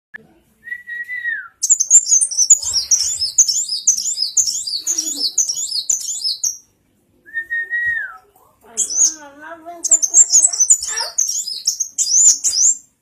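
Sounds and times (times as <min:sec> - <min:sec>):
sunbird twittering song: 0:01.6 - 0:06.7, 0:08.8 - 0:13.0.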